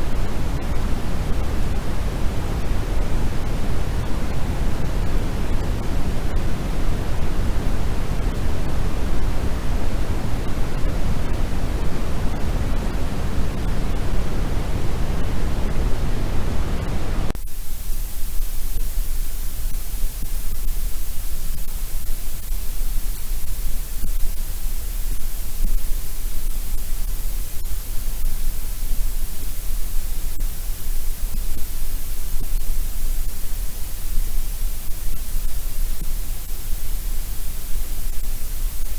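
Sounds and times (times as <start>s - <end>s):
thin hissy noise: 17.3s - 38.9s.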